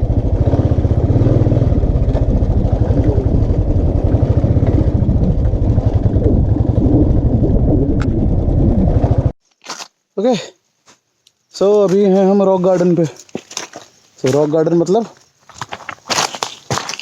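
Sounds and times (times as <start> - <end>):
motorcycle engine running: 0.0 - 9.4.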